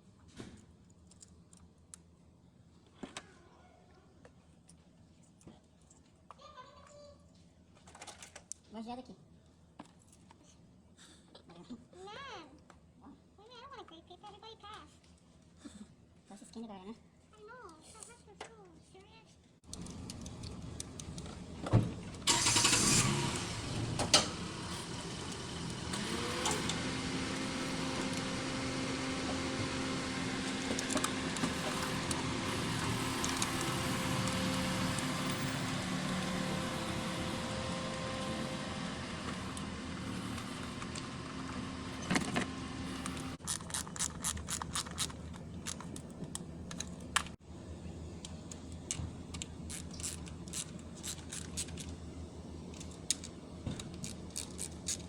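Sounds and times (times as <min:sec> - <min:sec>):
car engine starting and idling: 0:19.7 - 0:55.0
quick clicks: 0:48.2 - 0:52.0.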